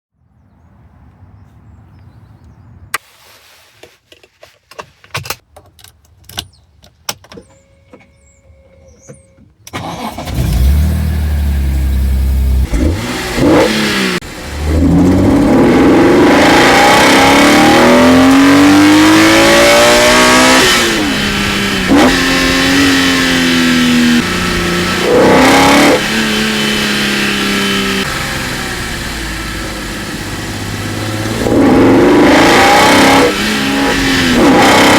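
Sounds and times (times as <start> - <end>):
car engine starting: 7.4 - 34.9
engine revving with induction noise: 9.8 - 34.9.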